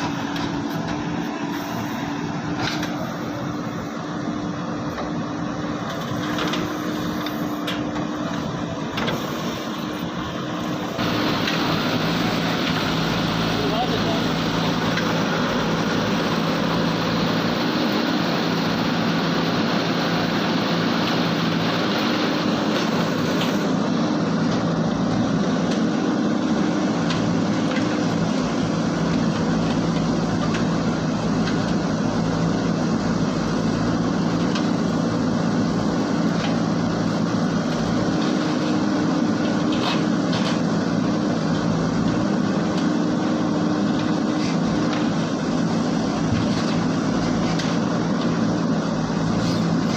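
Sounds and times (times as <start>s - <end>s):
diesel engine running: 0.0s - 49.9s.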